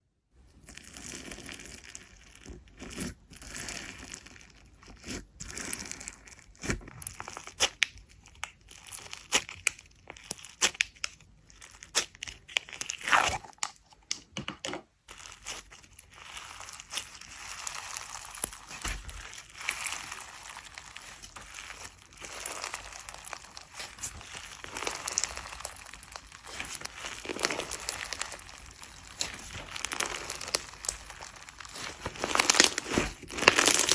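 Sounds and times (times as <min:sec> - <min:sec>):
slime squishing and crackling: 0:00.5 - 0:14.2, 0:15.0 - 0:33.9.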